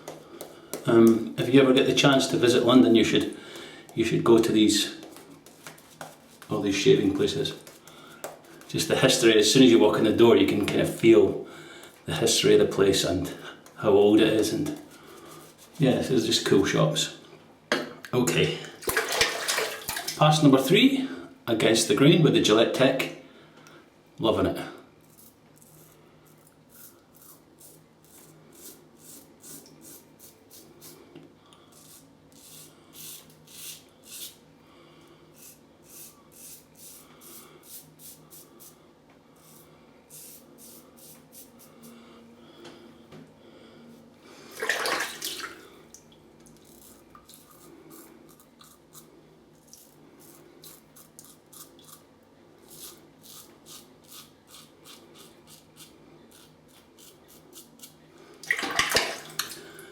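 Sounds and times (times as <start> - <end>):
razor scraping stubble: 25.0 - 31.0, 39.4 - 41.7, 46.6 - 52.1, 52.7 - 58.0.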